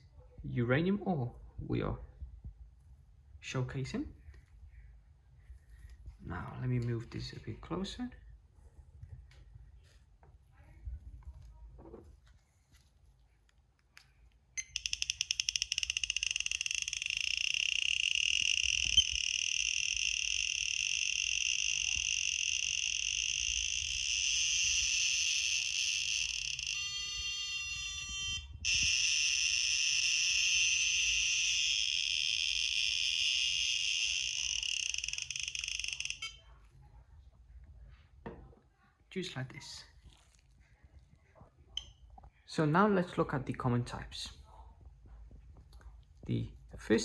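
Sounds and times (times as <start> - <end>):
stepped beeping: 14.6 - 23.9
radiation detector clicking buzz: 14.6 - 36.4.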